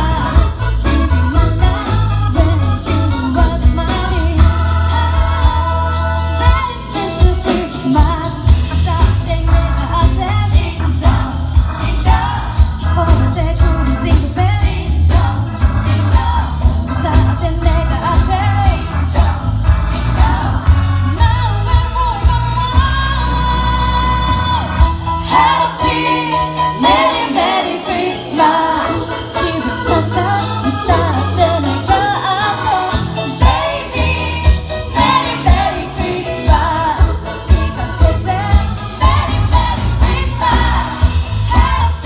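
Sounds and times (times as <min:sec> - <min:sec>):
pop song with beat and bass: 0:00.0 - 0:42.0
jingling sleigh bells: 0:25.3 - 0:42.0.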